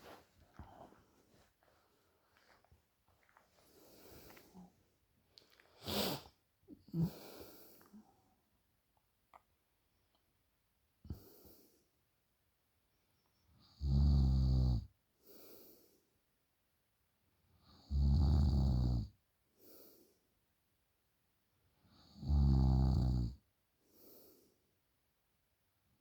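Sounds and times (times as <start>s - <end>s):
soft breath: 0.0s - 2.7s, 3.4s - 8.4s
person snoring: 6.9s - 7.8s.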